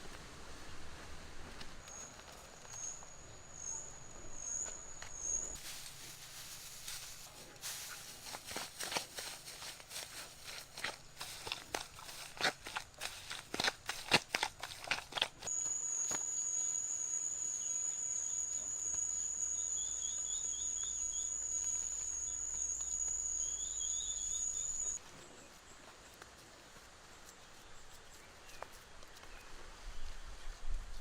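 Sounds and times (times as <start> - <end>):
high-pitched insect trill: 15.5 - 25.0
bird twittering: 19.1 - 25.0.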